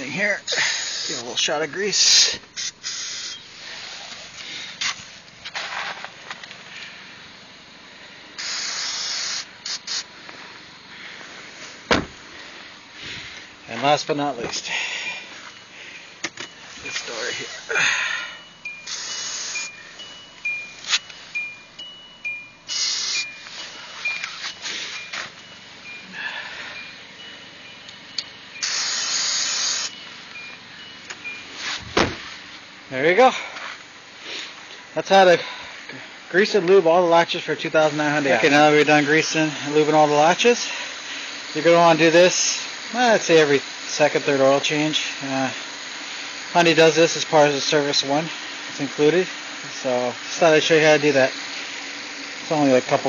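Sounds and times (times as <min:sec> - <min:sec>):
aerosol spray hissing: 0:00.5 - 0:06.0, 0:08.4 - 0:10.1, 0:18.8 - 0:19.8, 0:22.7 - 0:25.3, 0:28.6 - 0:30.0, 0:37.6 - 0:53.0
aerosol can spraying: 0:00.6 - 0:01.3, 0:02.1 - 0:04.2, 0:08.4 - 0:10.1, 0:18.8 - 0:19.7, 0:22.7 - 0:25.0, 0:28.6 - 0:29.9
faint car door chime: 0:13.7 - 0:28.6, 0:29.9 - 0:32.3.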